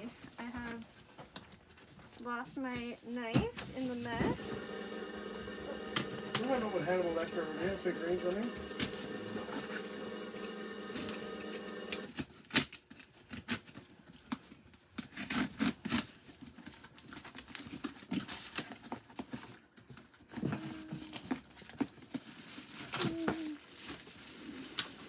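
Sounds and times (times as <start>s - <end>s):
tape tearing: 10.9s - 19.5s
cardboard and packing crinkling: 11.9s - 25.0s.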